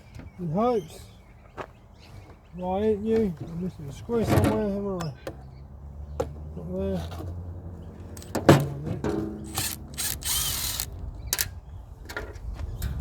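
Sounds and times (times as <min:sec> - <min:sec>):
clicks and knocks of parts: 0:08.1 - 0:11.6.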